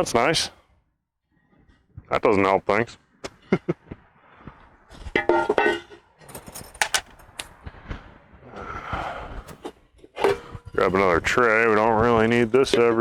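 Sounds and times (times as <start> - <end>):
metal tools clinking: 6.8 - 7.2.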